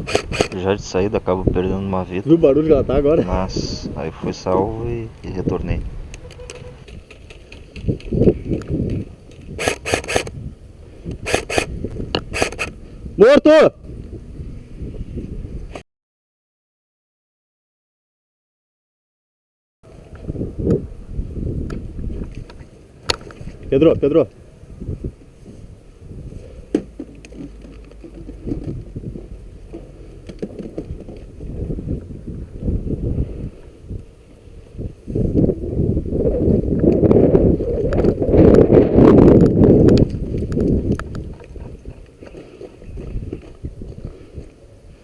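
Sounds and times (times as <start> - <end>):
airsoft rifle shots: 0.0 - 0.6, 9.6 - 10.3, 11.2 - 11.7, 12.3 - 12.8
sharp clicks: 0.0 - 0.6, 6.1 - 10.4, 11.1 - 12.8
wind rumbling on microphone: 0.0 - 15.8, 19.9 - 45.0.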